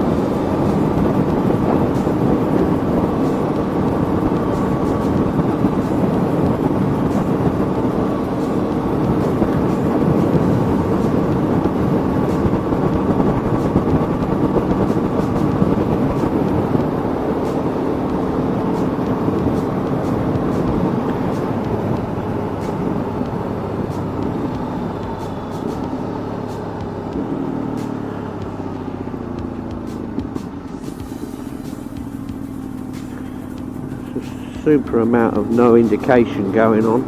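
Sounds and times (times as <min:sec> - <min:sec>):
motorcycle engine running: 0:00.0 - 0:37.0
rushing noise: 0:00.0 - 0:37.0.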